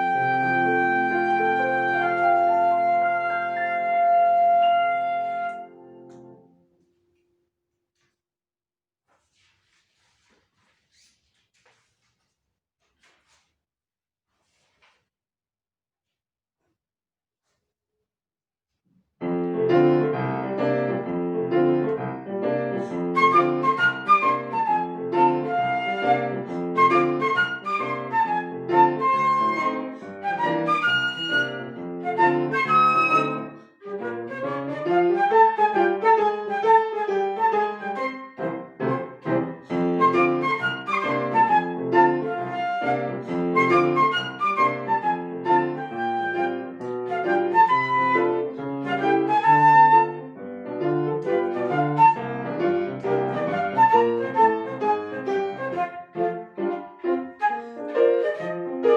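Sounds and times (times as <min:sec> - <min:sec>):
flute melody: 0:00.0 - 0:06.2, 0:22.8 - 0:50.4, 0:51.2 - 0:58.9
piano chords: 0:00.0 - 0:06.6, 0:19.2 - 0:58.9.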